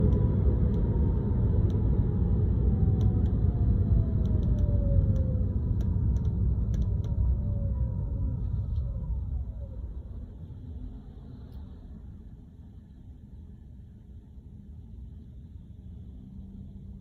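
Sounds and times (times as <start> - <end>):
car road rumble: 0.0 - 17.0
rattle clicks in car: 4.3 - 7.2.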